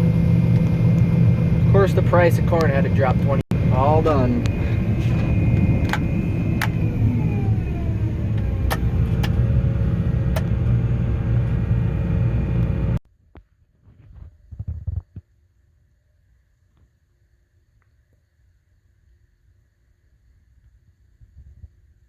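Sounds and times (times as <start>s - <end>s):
farm machine engine rumbling: 0.0s - 13.0s
sharp clicks: 5.5s - 6.9s, 8.3s - 9.5s.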